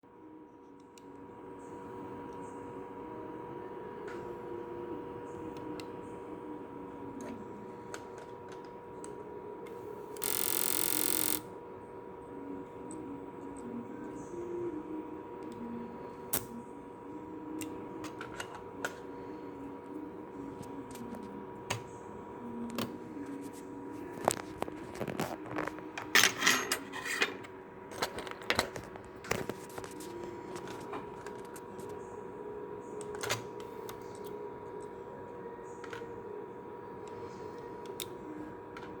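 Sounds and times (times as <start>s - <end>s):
steady electrical hum: 0.2s - 39.0s
faint wavering whir: 9.1s - 25.7s.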